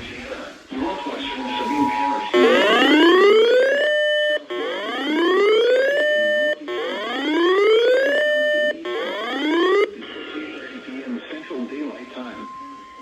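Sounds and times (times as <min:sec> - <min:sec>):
whooping electronic alert tone: 0:01.6 - 0:09.9.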